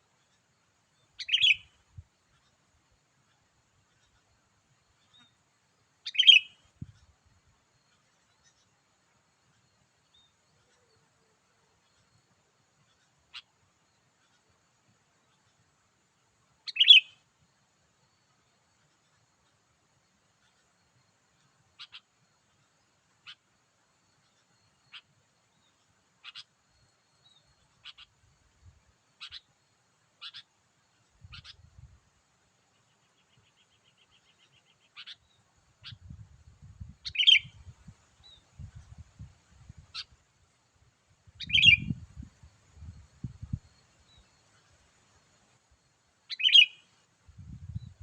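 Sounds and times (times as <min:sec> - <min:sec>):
bird chirping: 0:00.2 - 0:02.6, 0:06.0 - 0:07.2, 0:09.4 - 0:14.5, 0:16.6 - 0:17.2, 0:20.4 - 0:23.5, 0:24.1 - 0:29.6, 0:30.2 - 0:31.9, 0:32.7 - 0:40.2, 0:41.3 - 0:45.3, 0:46.2 - 0:48.0.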